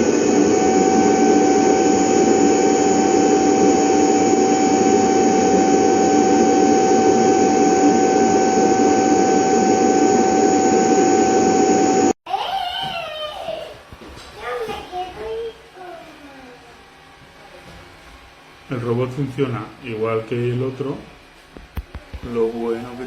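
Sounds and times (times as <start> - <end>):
vacuum motor whining: 0.0 - 12.1.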